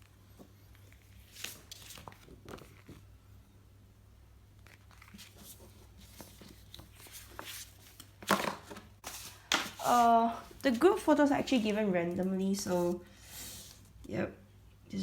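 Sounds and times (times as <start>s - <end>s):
plastic sheets crinkling: 0.8s - 3.0s, 4.6s - 13.0s.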